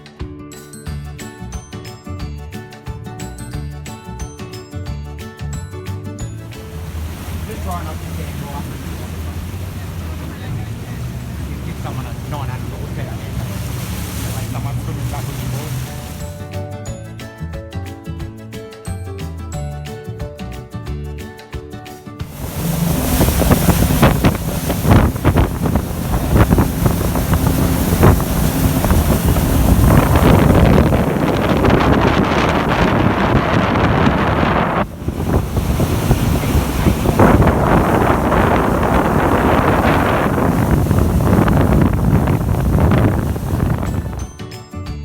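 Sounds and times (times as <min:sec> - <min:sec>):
rushing water: 0:06.4 - 0:16.6, 0:22.2 - 0:44.3
wind buffeting microphone: 0:06.5 - 0:16.5, 0:22.2 - 0:44.3.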